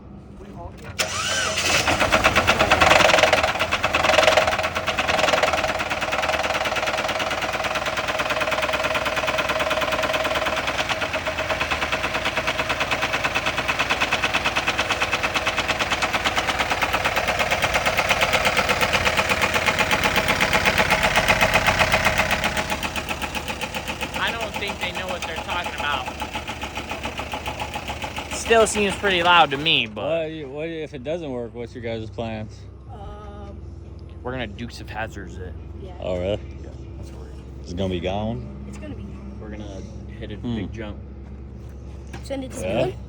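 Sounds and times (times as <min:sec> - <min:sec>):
car engine running: 0:00.0 - 0:43.0
fast engine knock: 0:01.0 - 0:29.8.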